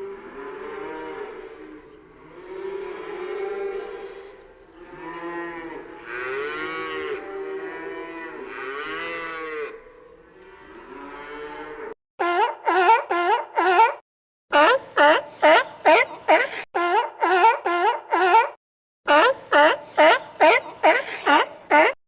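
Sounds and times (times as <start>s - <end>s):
cows mooing: 0.0s - 12.0s
animal short repeated calls: 14.6s - 22.0s.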